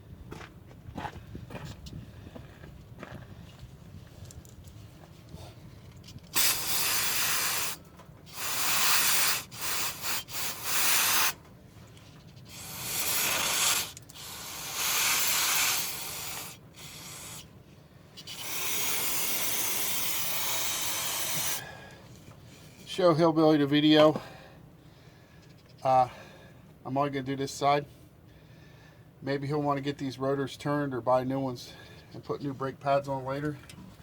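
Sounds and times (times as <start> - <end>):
aerosol spray hissing: 6.3 - 11.4, 12.5 - 17.5, 18.2 - 21.7.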